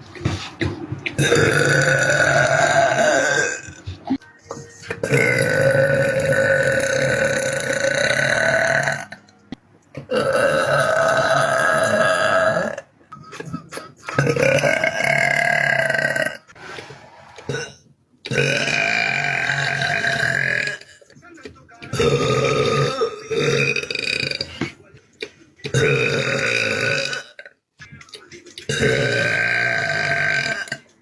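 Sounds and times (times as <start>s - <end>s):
woman burping: 1.2s - 3.8s, 5.0s - 9.2s, 10.0s - 16.4s, 22.0s - 24.7s, 25.7s - 27.5s, 28.7s - 30.8s.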